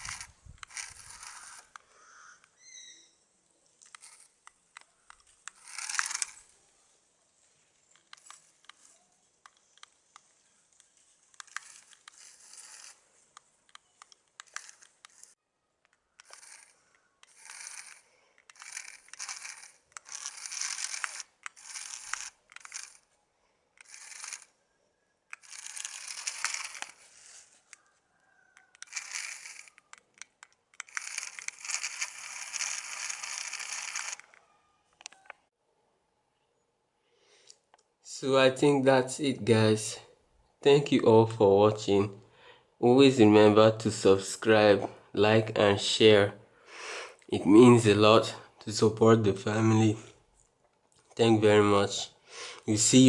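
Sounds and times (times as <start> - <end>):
toy car wheels crunching on dirt: 0.0 - 2.5, 3.7 - 24.6, 25.3 - 35.2.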